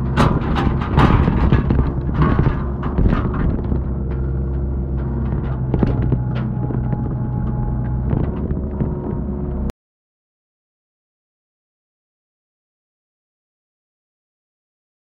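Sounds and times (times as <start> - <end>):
excavator engine running: 0.0 - 9.7
short knocks and clanks: 0.0 - 9.7.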